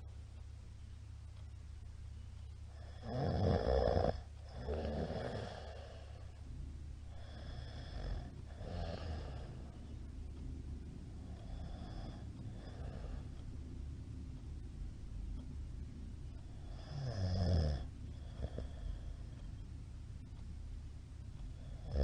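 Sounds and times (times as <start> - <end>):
steady low hum: 0.0 - 22.0
man snoring: 2.8 - 6.0, 7.1 - 9.6, 16.6 - 18.9, 21.7 - 22.0.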